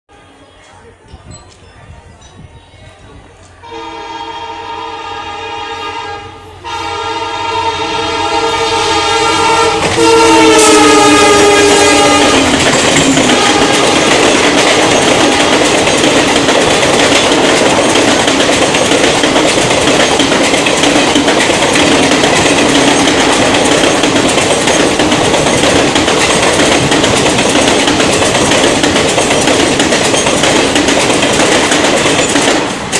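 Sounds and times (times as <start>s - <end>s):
train rushing past: 0.1s - 32.9s
wheels clattering over rail joints: 12.4s - 32.9s.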